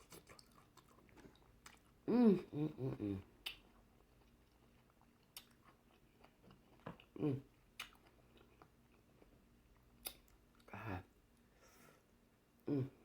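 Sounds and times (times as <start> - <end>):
close chewing and mouth clicks: 0.0 - 2.1, 2.9 - 10.7.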